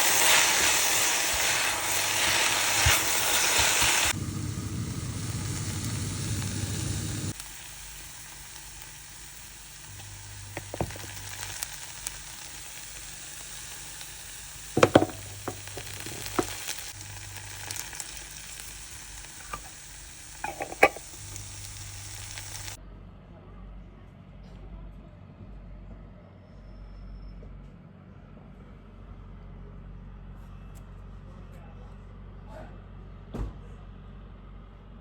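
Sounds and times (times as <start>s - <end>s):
food sizzling in a frying pan: 0.0s - 22.8s
stirring clinks and scrapes: 20.4s - 21.2s.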